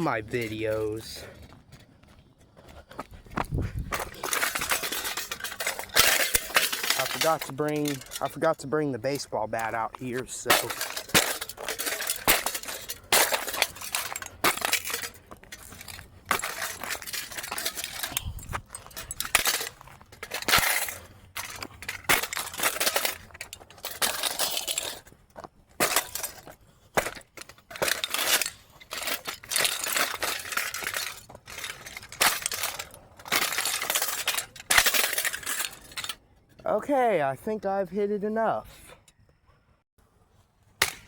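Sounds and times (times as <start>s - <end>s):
glass and metal breaking: 4.1s - 25.1s, 25.8s - 36.2s.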